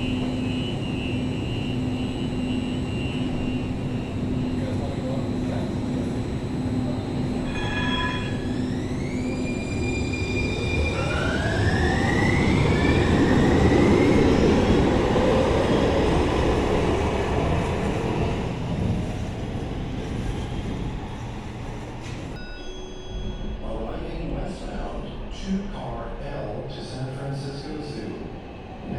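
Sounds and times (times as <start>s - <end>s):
wheels rumbling on rail: 0.0s - 22.4s.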